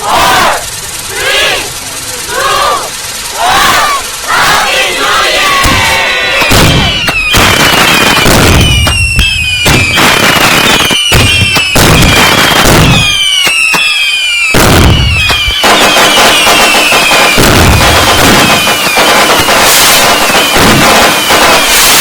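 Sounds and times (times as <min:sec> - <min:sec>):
fireworks whistles falling: 0:00.0 - 0:22.0
fireworks bangs and crackling: 0:05.4 - 0:22.0.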